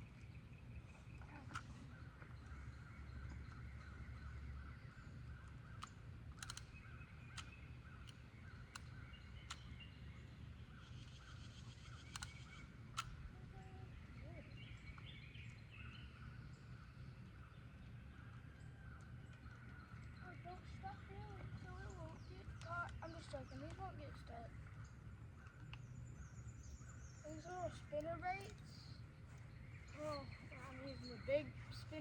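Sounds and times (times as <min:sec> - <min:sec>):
sharp clicks: 0:05.4 - 0:13.8.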